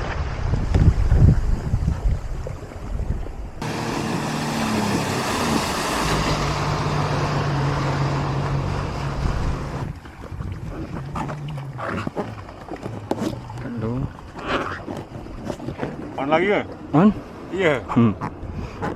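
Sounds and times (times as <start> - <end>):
wind buffeting microphone: 0.0 - 12.0
water spray hiss: 3.6 - 7.3
jet ski engine running: 3.6 - 17.5.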